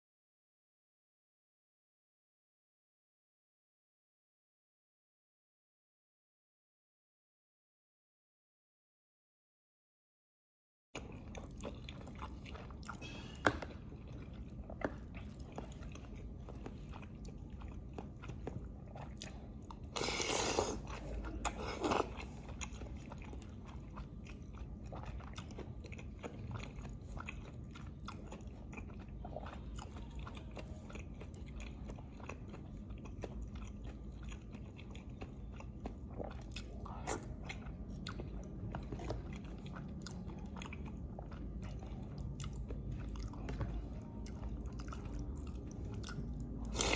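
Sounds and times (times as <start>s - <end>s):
chewing with wet clicks: 11.0s - 46.9s.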